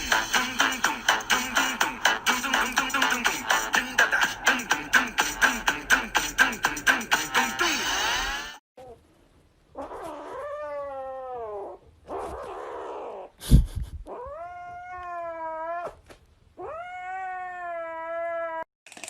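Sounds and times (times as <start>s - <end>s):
cat yowling: 9.8s - 13.3s, 14.1s - 16.0s, 16.6s - 18.7s.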